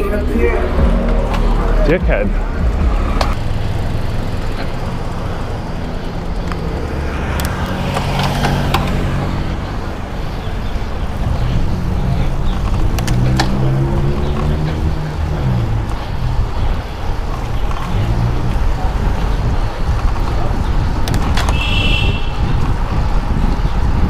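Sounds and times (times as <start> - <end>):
motor vehicle engines humming: 0.0 - 24.0
wind rushing over microphone: 5.0 - 24.0.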